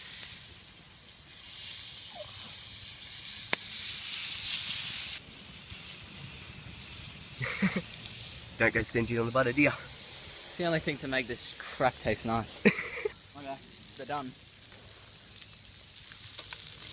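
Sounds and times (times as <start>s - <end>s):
fish sizzling in a pan: 0.0s - 16.9s.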